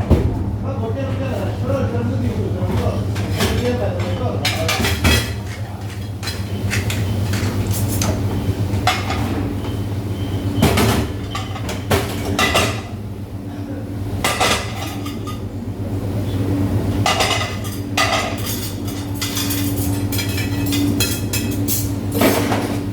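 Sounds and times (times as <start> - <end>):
steady low hum: 0.0 - 22.9
dishes and cutlery clattering: 2.8 - 8.1, 17.0 - 22.8.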